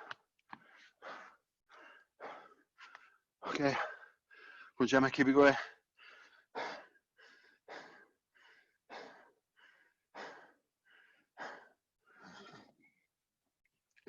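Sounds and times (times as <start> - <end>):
person panting hard: 0.0 - 4.8, 5.6 - 12.8.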